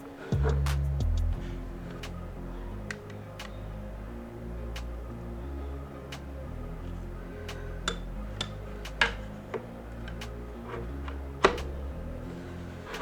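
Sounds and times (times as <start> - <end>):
background music with low bass: 0.0 - 13.0.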